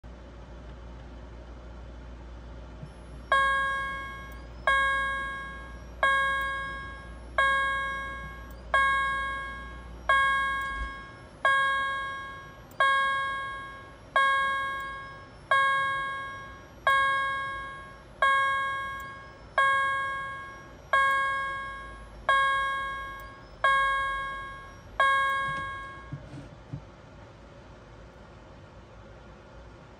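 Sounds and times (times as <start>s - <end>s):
fire alarm chime: 2.9s - 26.3s.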